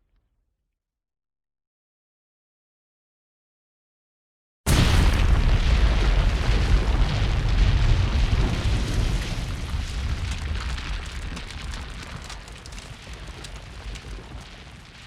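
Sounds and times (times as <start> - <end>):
explosion boom and rumble: 4.7 - 15.0.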